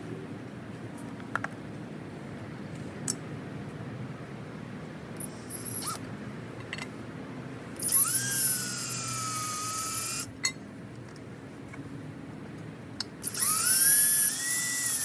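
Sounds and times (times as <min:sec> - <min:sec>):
power drill whining: 0:07.8 - 0:10.3, 0:13.2 - 0:15.0.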